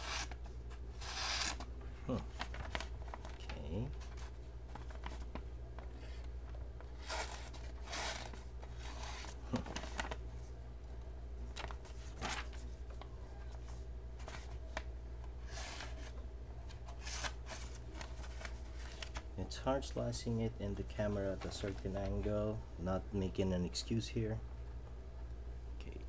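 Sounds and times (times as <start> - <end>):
knife slicing paper: 0.0 - 0.4, 1.0 - 1.6.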